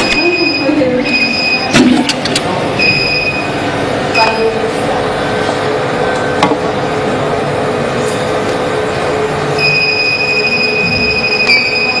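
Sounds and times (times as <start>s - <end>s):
machinery whirring: 0.0s - 12.0s
high-pitched whine: 8.8s - 12.0s.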